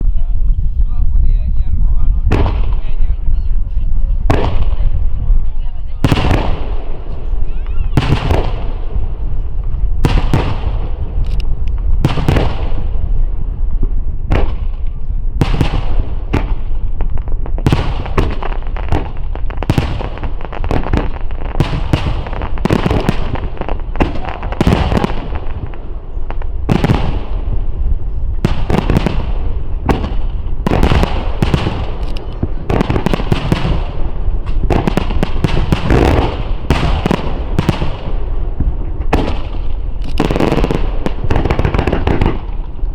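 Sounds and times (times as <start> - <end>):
low rumble: 0.0 - 17.6.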